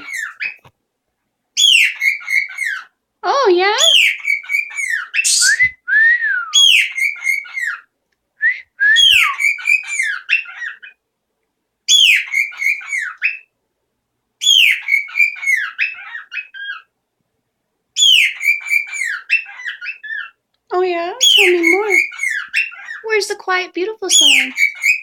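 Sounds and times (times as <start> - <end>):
pet bird whistling: 3.8 - 7.8, 8.6 - 10.7, 18.0 - 20.3.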